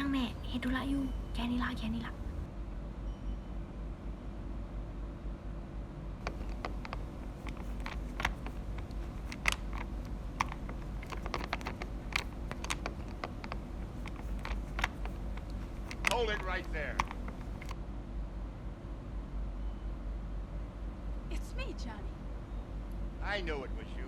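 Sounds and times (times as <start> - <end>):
keyboard typing: 6.2 - 17.7.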